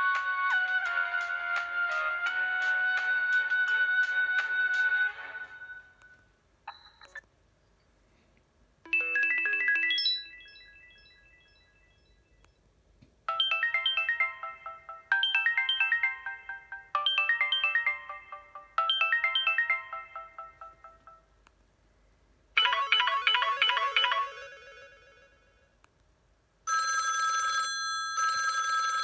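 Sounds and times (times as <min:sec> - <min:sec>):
synthesized ringtone melody: 0:08.9 - 0:12.2, 0:13.3 - 0:21.3, 0:22.6 - 0:25.7.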